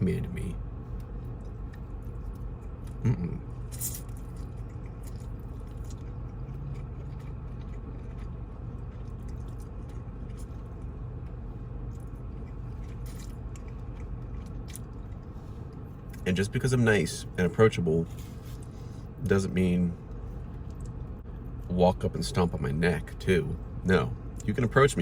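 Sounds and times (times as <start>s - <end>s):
steady low hum: 0.0s - 25.0s
person chewing food: 0.8s - 16.2s
small crunches: 0.9s - 16.3s.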